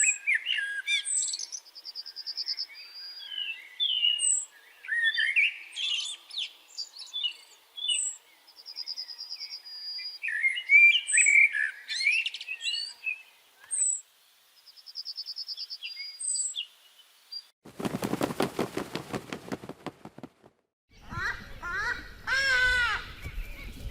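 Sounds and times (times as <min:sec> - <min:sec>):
small songbirds chirping and singing: 0:00.0 - 0:17.6
rapid rattling pulse: 0:17.7 - 0:20.6.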